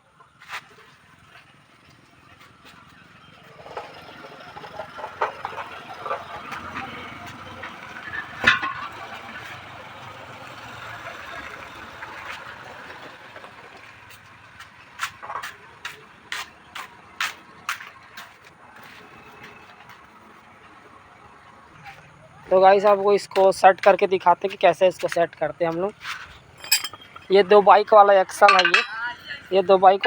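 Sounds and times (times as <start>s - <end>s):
metal equipment clanking: 26.0s - 27.4s, 28.3s - 29.1s.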